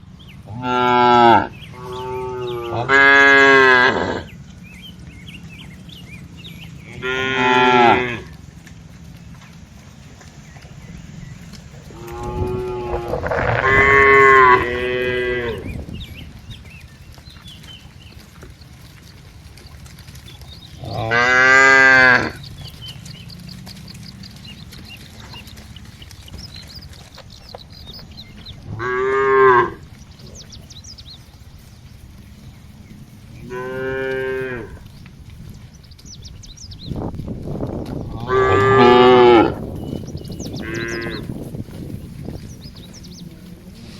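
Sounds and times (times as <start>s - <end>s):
cattle mooing: 0.5s - 4.4s, 6.8s - 8.4s, 11.9s - 15.8s, 20.8s - 22.4s, 28.6s - 29.9s, 33.4s - 34.9s, 38.1s - 39.7s, 40.6s - 41.4s.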